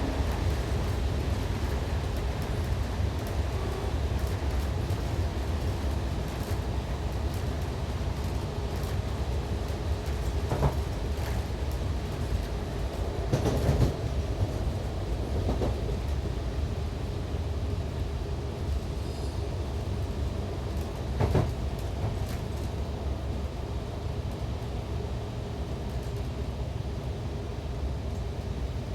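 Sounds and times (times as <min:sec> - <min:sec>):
railcar engine and rail rumble: 0:00.0 - 0:28.9
track knocks and rattles: 0:10.0 - 0:16.2, 0:20.8 - 0:22.8.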